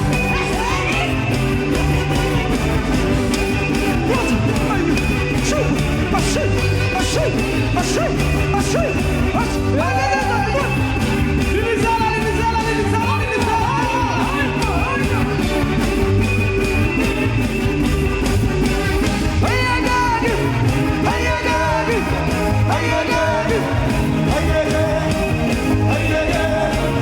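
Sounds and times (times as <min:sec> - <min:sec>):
gospel band music: 0:00.0 - 0:27.0
steady drum beat: 0:00.0 - 0:27.0
person singing: 0:03.9 - 0:15.5, 0:19.4 - 0:27.0.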